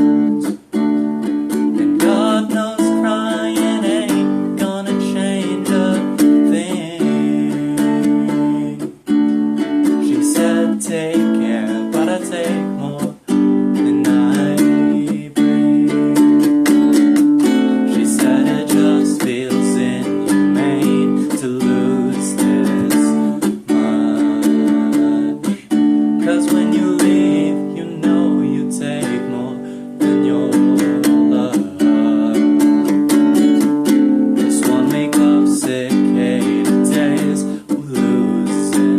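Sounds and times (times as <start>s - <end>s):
acoustic guitar strumming chords: 0.0s - 38.9s.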